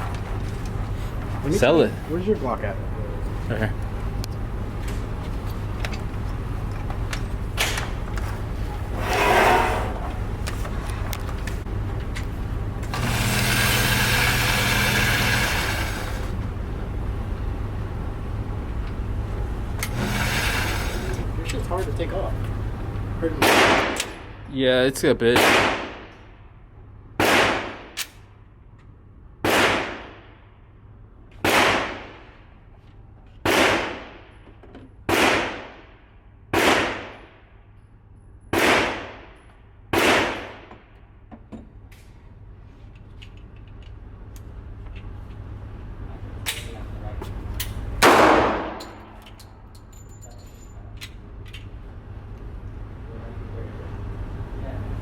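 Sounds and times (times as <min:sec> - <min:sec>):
pistol shots ringing: 0:48.0 - 0:49.0.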